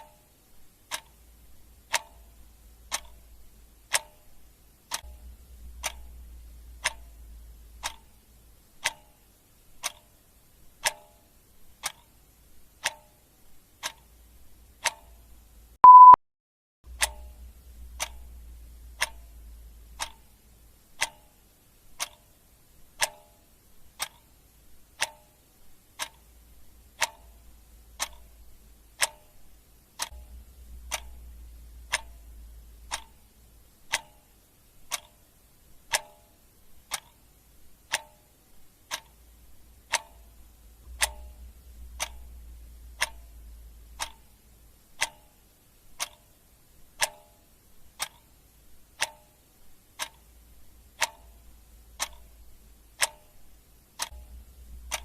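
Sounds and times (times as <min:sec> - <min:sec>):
clock ticking: 0:00.0 - 0:16.2, 0:16.9 - 0:55.0
short loud beep: 0:15.8 - 0:16.2.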